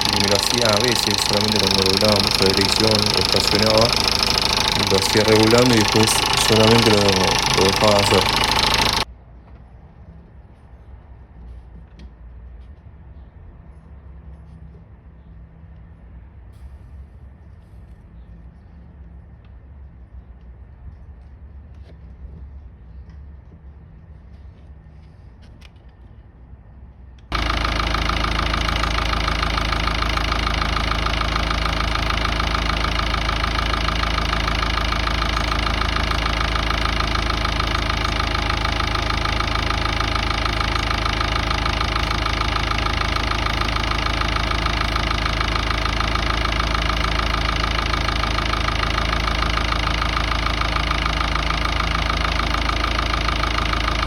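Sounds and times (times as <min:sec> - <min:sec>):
diesel engine idling: 0:00.0 - 0:09.1, 0:27.3 - 0:54.0.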